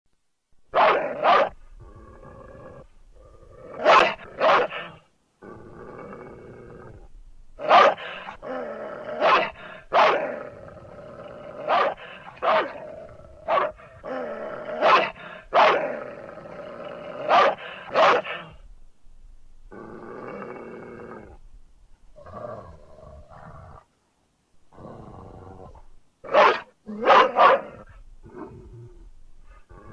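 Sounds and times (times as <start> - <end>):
big dog barking: 0.7 - 1.6, 3.8 - 5.0, 7.6 - 8.3, 9.2 - 10.4, 11.6 - 14.0, 14.6 - 16.0, 17.2 - 18.6, 26.2 - 27.9
dog growling low: 1.8 - 7.1, 8.0 - 18.6, 19.7 - 21.4, 22.2 - 23.9, 24.7 - 26.0, 26.9 - 29.9.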